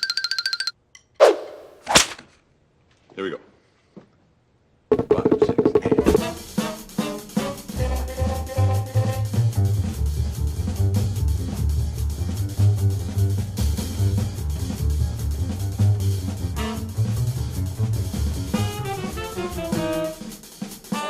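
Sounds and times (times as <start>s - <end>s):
jazz band music: 5.0s - 21.0s.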